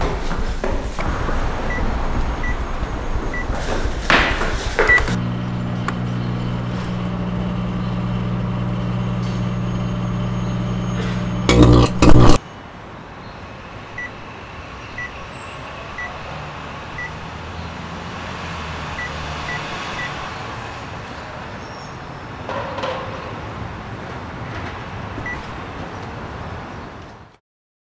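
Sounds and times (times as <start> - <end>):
low running hum: 1.0 - 12.4
microwave oven beeping: 4.8 - 12.4, 15.0 - 15.2, 16.0 - 16.2, 17.0 - 17.2, 19.0 - 20.2, 25.3 - 25.5.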